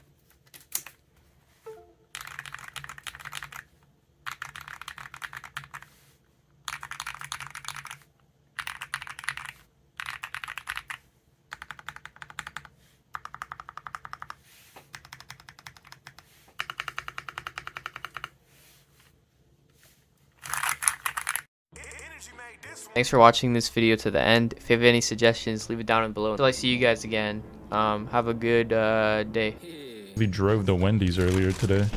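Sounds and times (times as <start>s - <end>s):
fast keyboard typing: 2.1s - 5.9s, 6.6s - 18.4s, 20.4s - 21.5s.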